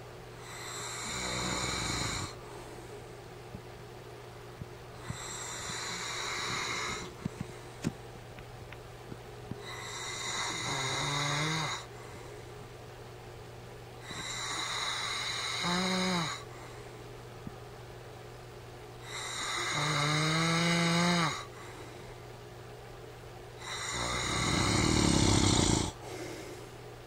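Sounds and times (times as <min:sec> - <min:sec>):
man snoring: 0:00.4 - 0:02.4, 0:05.0 - 0:07.1, 0:09.6 - 0:11.9, 0:14.0 - 0:16.5, 0:19.0 - 0:21.5, 0:23.6 - 0:26.0.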